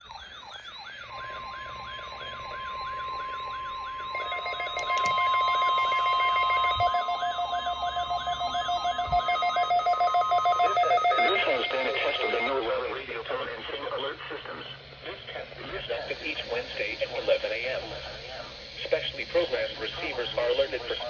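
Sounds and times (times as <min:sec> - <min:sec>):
falling electronic siren sweep: 0:00.0 - 0:12.6
steady high alarm tone: 0:00.0 - 0:21.0.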